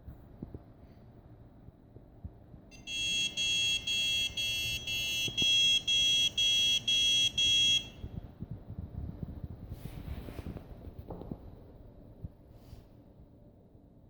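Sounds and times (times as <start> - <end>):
high-pitched buzzer beeps: 2.7 - 8.0.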